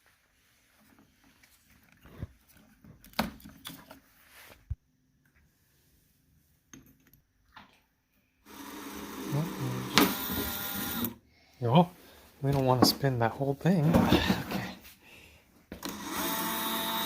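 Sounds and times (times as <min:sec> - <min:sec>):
power drill boring into wood: 0:08.5 - 0:11.2, 0:15.8 - 0:17.0.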